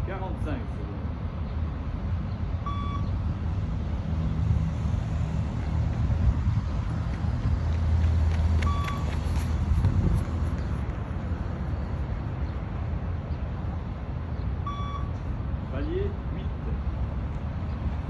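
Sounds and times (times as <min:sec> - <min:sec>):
short electronic beeps: 0:02.6 - 0:03.2, 0:08.6 - 0:09.1, 0:14.7 - 0:15.1.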